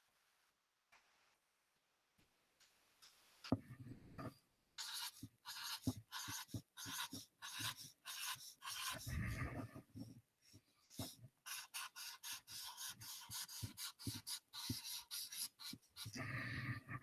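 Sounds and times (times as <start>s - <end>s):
pen drawing on a board: 3.5s - 17.0s.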